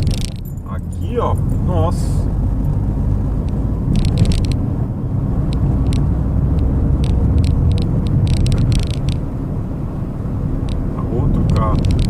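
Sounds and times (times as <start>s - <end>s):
sharp clicking rattles: 0.0s - 0.7s, 3.4s - 4.7s, 5.4s - 9.4s, 10.6s - 12.0s
car road and engine rumble: 0.0s - 12.0s.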